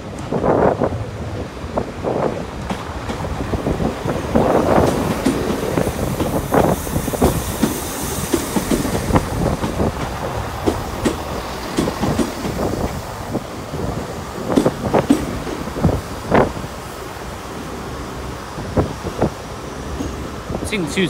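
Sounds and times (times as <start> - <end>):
train wheels clacking: 2.6 - 13.4, 14.4 - 16.6, 19.2 - 20.4.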